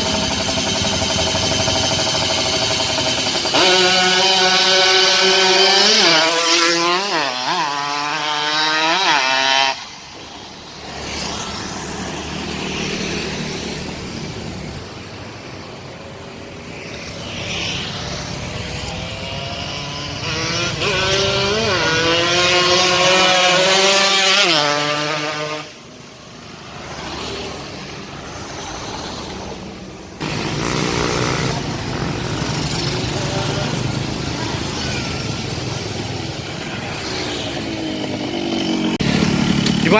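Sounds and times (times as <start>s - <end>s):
two-stroke motorcycle engine revving: 0.0s - 10.0s, 17.0s - 25.8s, 30.2s - 39.9s.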